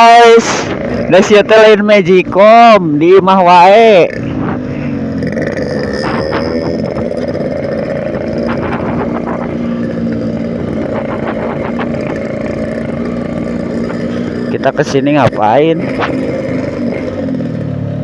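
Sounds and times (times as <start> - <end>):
two-stroke motorcycle engine: 0.0 - 18.0
wind noise on microphone: 6.0 - 9.9, 10.5 - 12.3.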